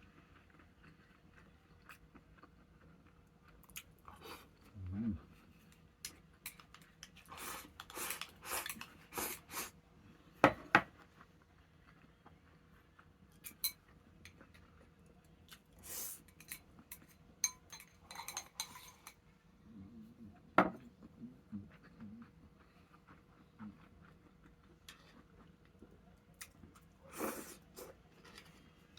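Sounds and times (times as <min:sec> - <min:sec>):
tableware clinking: 0:16.3 - 0:19.2.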